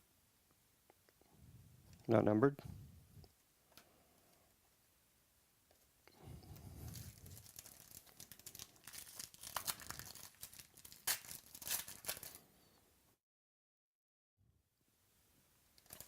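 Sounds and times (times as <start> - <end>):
wrapper tearing and crinkling: 6.8 - 12.4, 15.8 - 16.0.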